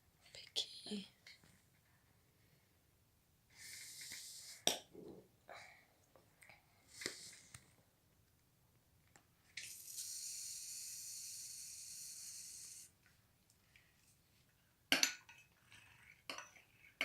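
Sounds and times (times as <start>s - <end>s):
steady hiss: 9.6s - 13.0s.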